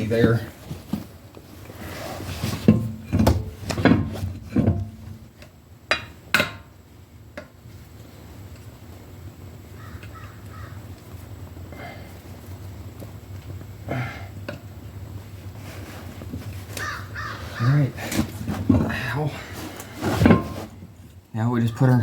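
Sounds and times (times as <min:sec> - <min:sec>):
thuds and knocks of wheel: 0:02.6 - 0:05.2, 0:18.2 - 0:19.1.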